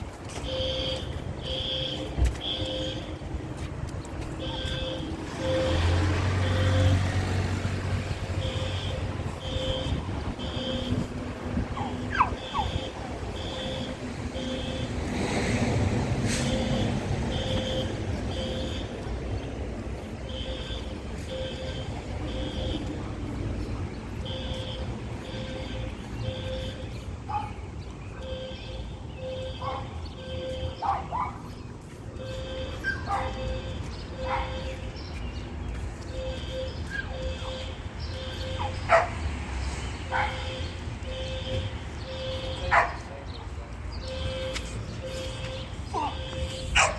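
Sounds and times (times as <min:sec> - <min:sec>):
fire alarm beeping: 0:00.3 - 0:03.1, 0:08.4 - 0:11.1, 0:12.0 - 0:14.9, 0:20.0 - 0:23.0
dog barking: 0:11.8 - 0:12.7, 0:27.3 - 0:27.6, 0:29.6 - 0:30.0, 0:30.8 - 0:31.5, 0:32.8 - 0:33.4, 0:34.2 - 0:34.7, 0:38.6 - 0:39.2, 0:40.1 - 0:40.5, 0:42.7 - 0:43.1.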